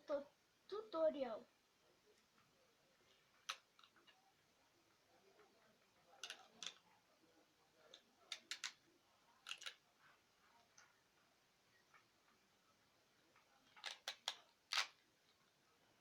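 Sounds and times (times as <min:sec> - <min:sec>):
adhesive tape clicks and crackles: 0:13.7 - 0:15.0.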